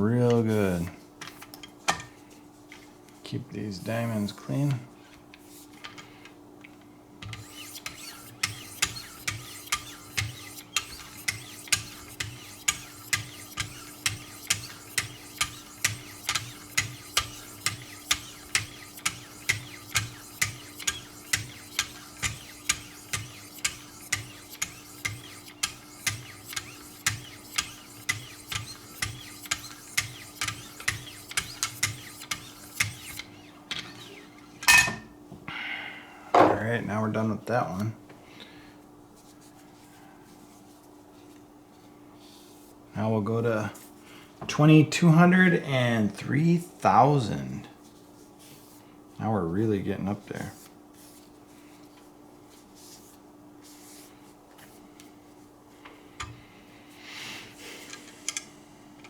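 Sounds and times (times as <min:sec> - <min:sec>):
sharpening stones stroking knife edge: 0:07.3 - 0:33.3.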